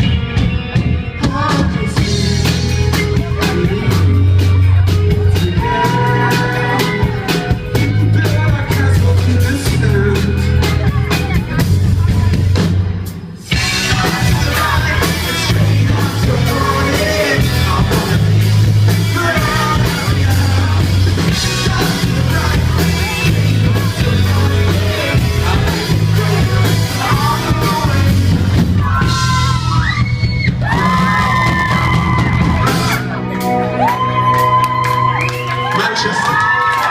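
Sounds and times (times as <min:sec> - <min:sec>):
live rock band playing: 0:00.0 - 0:36.9
person singing: 0:01.1 - 0:12.3, 0:13.5 - 0:30.0
long sliding vocal notes: 0:05.4 - 0:10.4.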